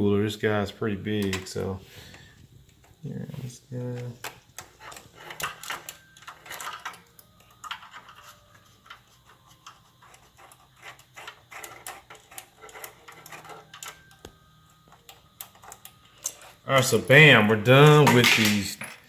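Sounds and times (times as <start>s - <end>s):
screwdriver clicks and scrapes: 4.0s - 14.3s.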